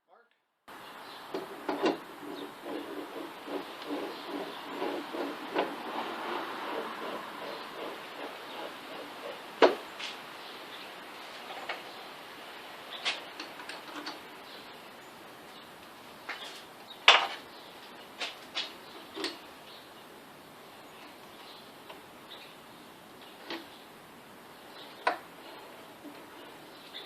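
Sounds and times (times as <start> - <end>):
lathe chuck clicking and knocking: 1.3 - 9.9.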